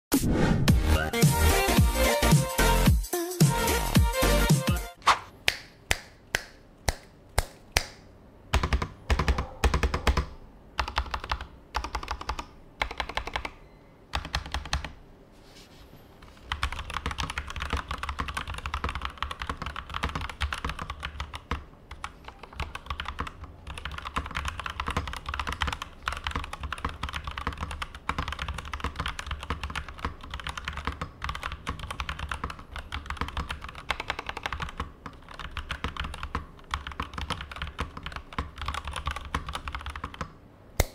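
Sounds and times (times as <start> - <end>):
mechanical keyboard typing: 8.5 - 15.0, 16.4 - 40.4.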